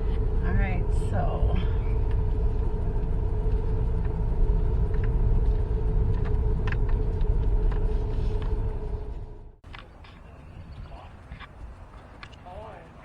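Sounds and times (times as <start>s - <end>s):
car engine idling: 0.0s - 10.4s.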